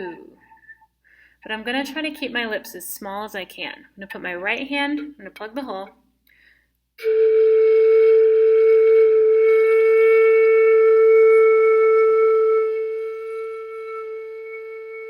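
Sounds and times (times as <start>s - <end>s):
flute headjoint long note: 0.0s - 0.9s, 7.0s - 15.0s
breathy air noise: 0.2s - 1.4s.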